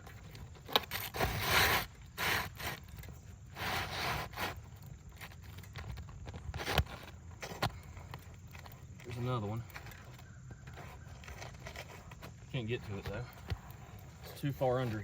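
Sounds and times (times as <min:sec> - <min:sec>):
scraping on roof shingles: 0:00.0 - 0:15.0.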